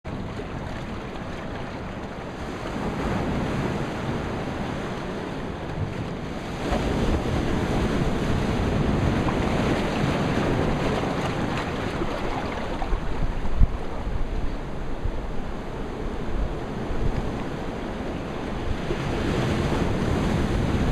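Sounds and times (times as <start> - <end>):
surf washing against rocks: 0.1 - 20.9
wind buffeting microphone: 0.1 - 20.9.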